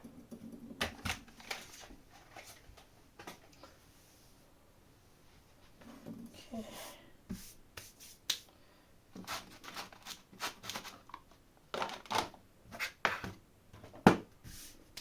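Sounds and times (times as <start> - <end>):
objects rustling on a tabletop: 0.8 - 4.4.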